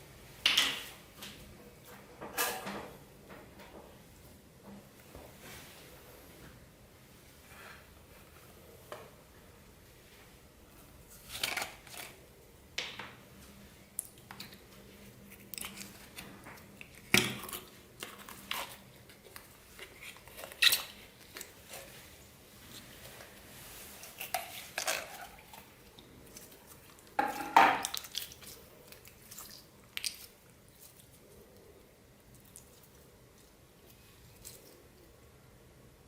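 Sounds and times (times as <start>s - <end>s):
slime squishing: 27.8s - 35.0s.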